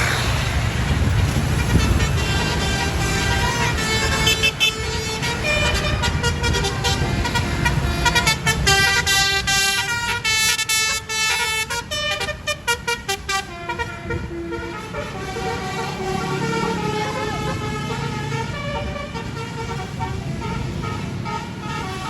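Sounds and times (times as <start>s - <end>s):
bus engine rumble: 0.0s - 22.0s
multi-trumpet air horn tune: 1.4s - 22.0s.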